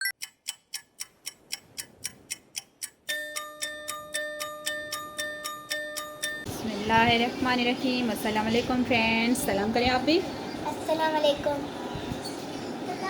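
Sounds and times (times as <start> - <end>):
clock-like ticking: 0.0 - 6.5.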